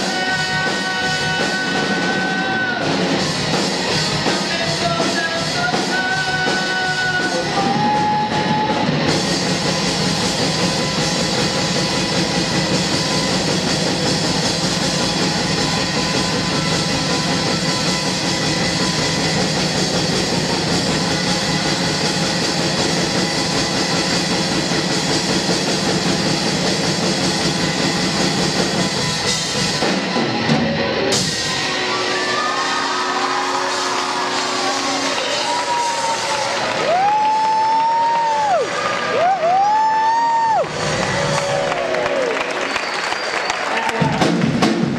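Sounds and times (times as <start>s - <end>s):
live heavy rock band: 0.0s - 42.1s.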